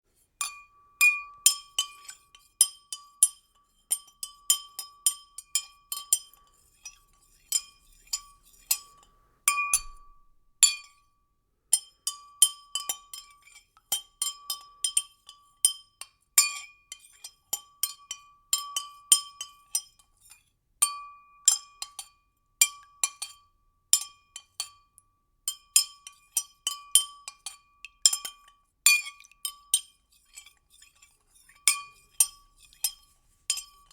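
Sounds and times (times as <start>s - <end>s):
spoon clinking in a glass: 0.4s - 11.0s, 25.5s - 33.9s.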